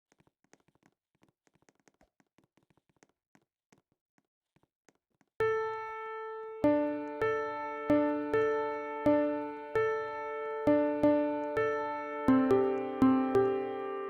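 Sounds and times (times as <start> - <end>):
electric piano playing chords: 5.4 - 14.0.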